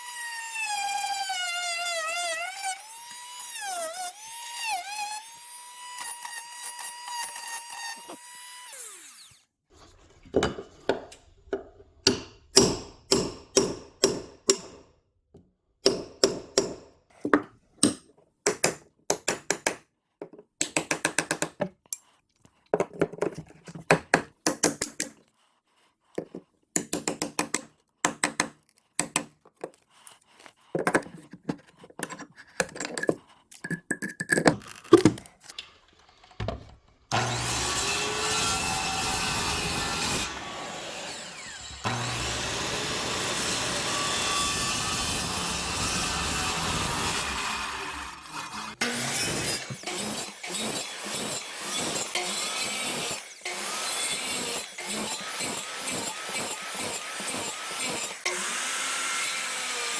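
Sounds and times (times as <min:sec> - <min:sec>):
power tool running: 0:35.6 - 0:59.9.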